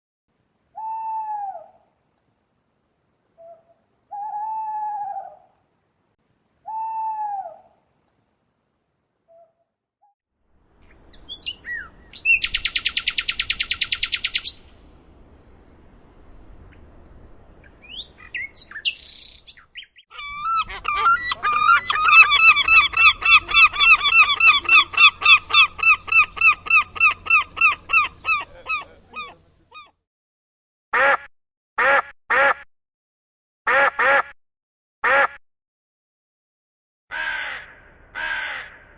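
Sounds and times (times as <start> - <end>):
nightingale singing: 10.8 - 14.9, 16.7 - 29.9
seagull honking calls: 20.1 - 30.0, 37.1 - 38.8.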